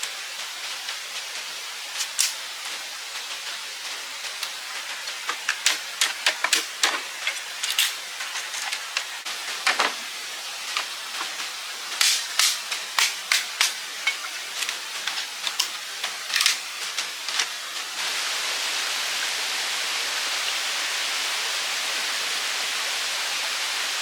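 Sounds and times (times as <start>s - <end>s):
running water rushing: 0.0s - 24.0s.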